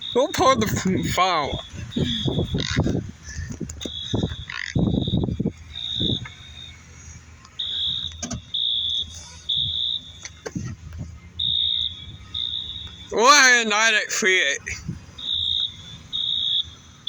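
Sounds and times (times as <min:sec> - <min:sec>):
fire alarm horns: 0:00.0 - 0:17.0.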